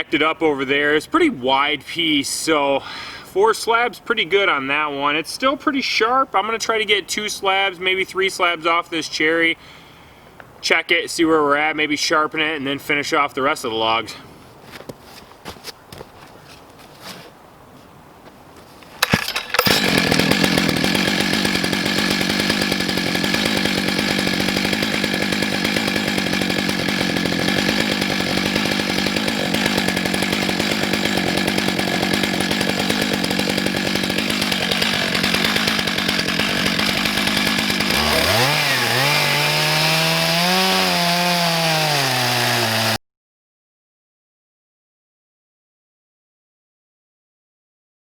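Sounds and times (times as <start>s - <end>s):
chainsaw cutting through log: 19.0s - 43.0s.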